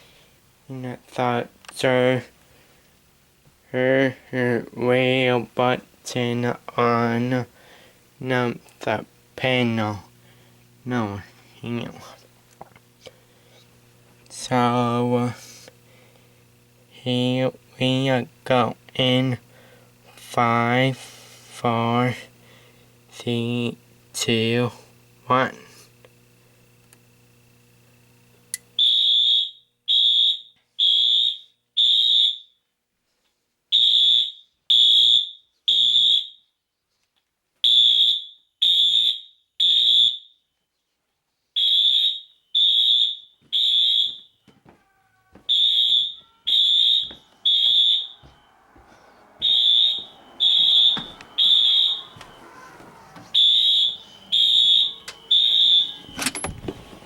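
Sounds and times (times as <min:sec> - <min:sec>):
fire alarm beeps: 0:28.8 - 0:32.6, 0:33.7 - 0:36.5, 0:37.6 - 0:40.5, 0:41.6 - 0:57.0.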